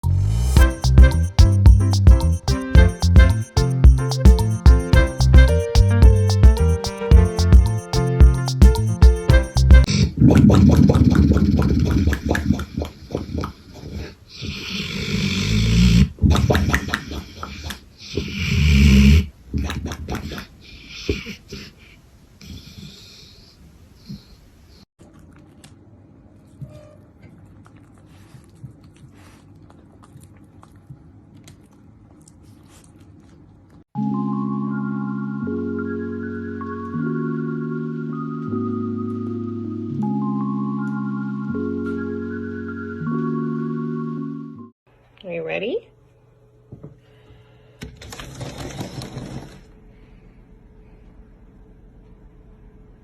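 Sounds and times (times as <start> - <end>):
marimba music: 0.0 - 9.9, 34.0 - 44.3
dog snoring: 14.4 - 16.2, 18.1 - 19.3
chewing crunches: 25.0 - 33.8.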